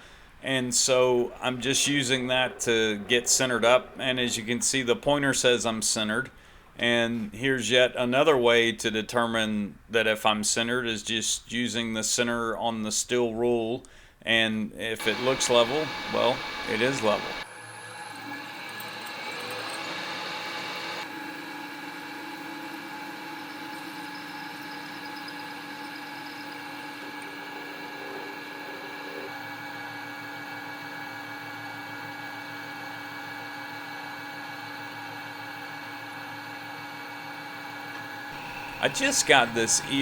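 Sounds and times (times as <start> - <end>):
milling machine whining: 0.0 - 5.6, 15.0 - 40.0.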